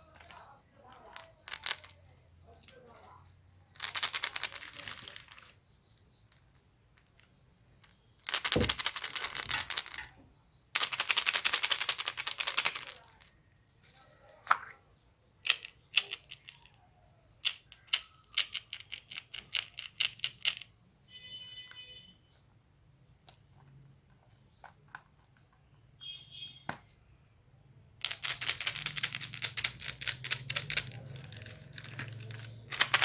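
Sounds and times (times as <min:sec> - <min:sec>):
packaging crackling: 0:28.1 - 0:33.0.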